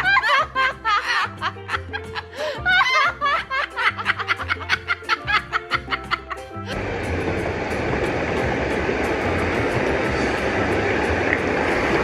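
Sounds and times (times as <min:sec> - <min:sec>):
background music: 0:00.0 - 0:12.0
steady rushing noise: 0:06.7 - 0:12.0.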